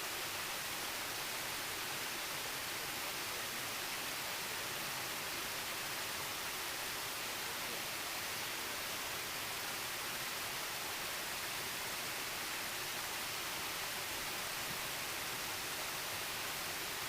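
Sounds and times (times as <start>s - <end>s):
mountain stream rushing: 0.0s - 17.0s.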